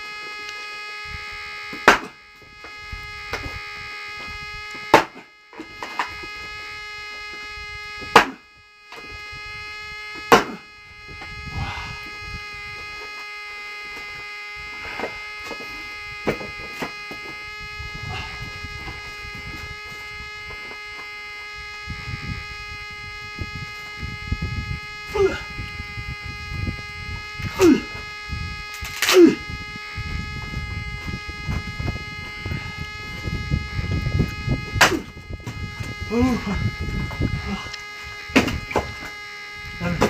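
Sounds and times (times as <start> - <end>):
steady buzzing hum: 0.0 - 40.0
axe striking a log: 1.8 - 2.1, 4.9 - 5.2, 8.1 - 8.4, 10.3 - 10.6, 34.8 - 35.0.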